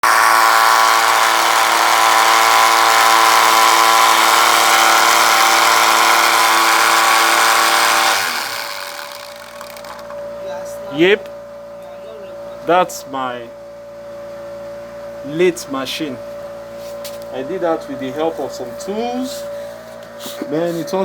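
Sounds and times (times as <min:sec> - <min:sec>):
electric motor whining: 0:00.0 - 0:10.2.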